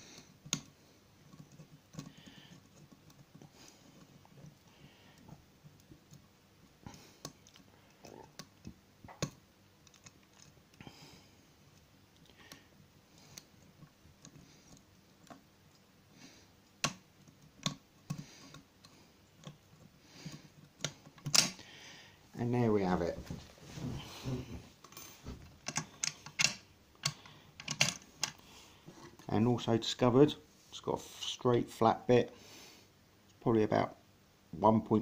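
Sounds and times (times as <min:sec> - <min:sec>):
lock picking clicks and scrapes: 0:20.7 - 0:21.6, 0:25.6 - 0:28.4.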